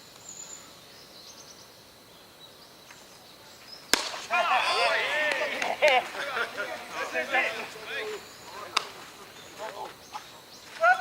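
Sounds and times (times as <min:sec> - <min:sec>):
sharp crack: 0:03.9 - 0:06.2, 0:08.7 - 0:09.0
people shouting: 0:04.0 - 0:08.9, 0:10.8 - 0:11.0.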